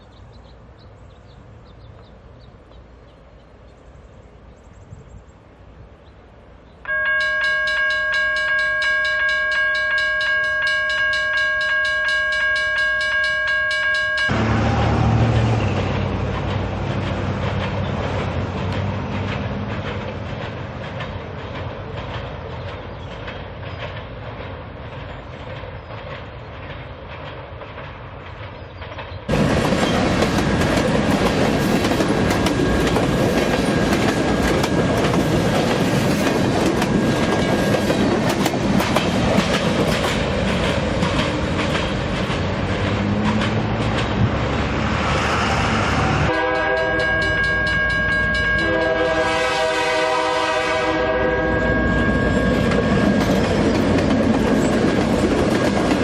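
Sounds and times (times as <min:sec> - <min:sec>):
diesel locomotives rumbling: 0:00.0 - 0:56.0
wheels clacking over rail joints: 0:06.9 - 0:45.7, 0:51.8 - 0:56.0
freight cars rushing rattle: 0:14.3 - 0:46.4, 0:51.9 - 0:56.0
locomotive air horn blast: 0:45.6 - 0:47.5, 0:48.5 - 0:52.4.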